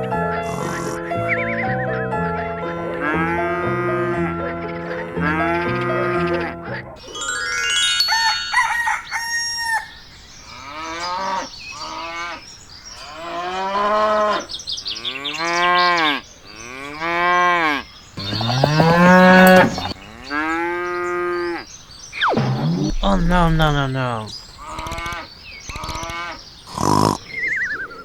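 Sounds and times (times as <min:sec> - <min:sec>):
rooster crowing: 0:08.0 - 0:10.0
cow mooing: 0:15.2 - 0:21.6.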